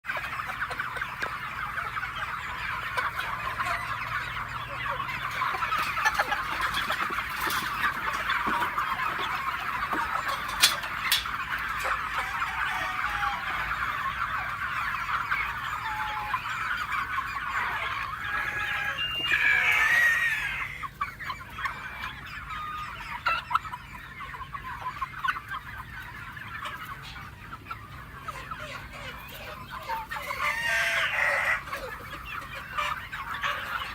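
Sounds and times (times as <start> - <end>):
chickens clucking: 0.0 - 33.9
rooster crowing: 18.2 - 20.7.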